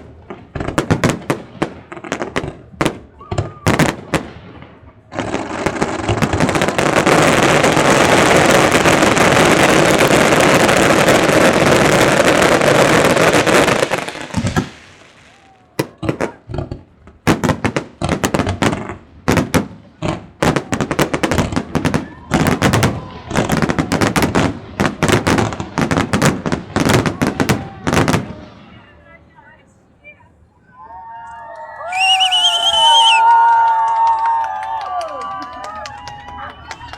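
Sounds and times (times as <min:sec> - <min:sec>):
fireworks bangs: 0:00.0 - 0:29.6.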